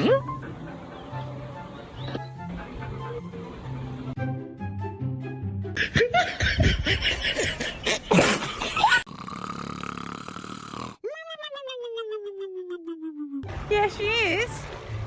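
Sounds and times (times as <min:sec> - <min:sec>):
background music: 0:00.0 - 0:06.7
squealing laughter-like vocal sounds: 0:11.0 - 0:13.5.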